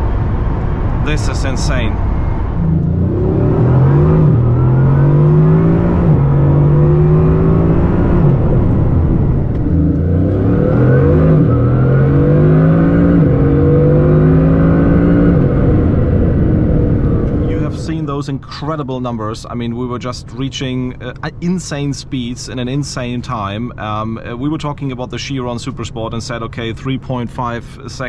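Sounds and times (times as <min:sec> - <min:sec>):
car accelerating hard: 0:00.0 - 0:18.2
road and tyre noise: 0:00.0 - 0:28.0.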